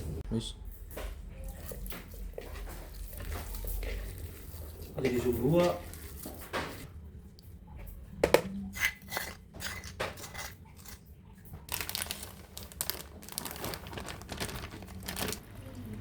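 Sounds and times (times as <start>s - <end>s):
utensils clinking against dishes: 8.5s - 11.1s
rustling: 11.7s - 15.8s.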